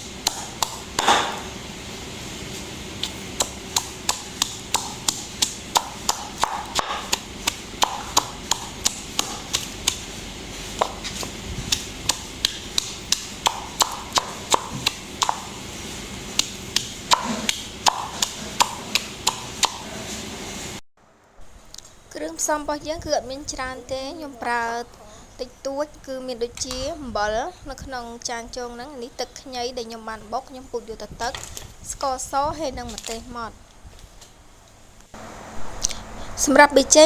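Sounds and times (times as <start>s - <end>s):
knife chopping on cutting board: 0.3s - 1.5s, 3.0s - 15.8s, 16.4s - 20.0s.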